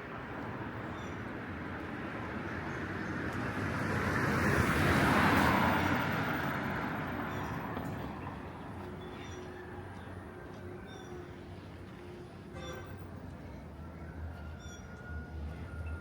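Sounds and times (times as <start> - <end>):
vehicle passing by: 1.4 - 10.7.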